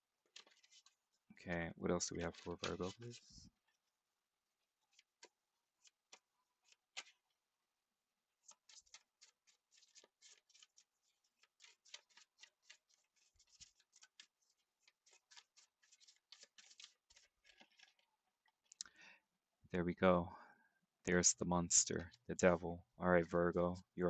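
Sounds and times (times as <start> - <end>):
cards being shuffled: 0.3 - 1.0, 2.1 - 3.4, 4.9 - 7.2, 8.4 - 18.1.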